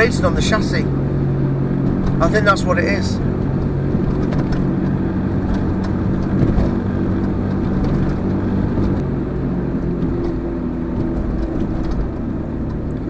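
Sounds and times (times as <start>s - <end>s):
car engine and exhaust droning: 0.0s - 13.0s
car bump: 1.8s - 2.6s, 3.2s - 9.0s.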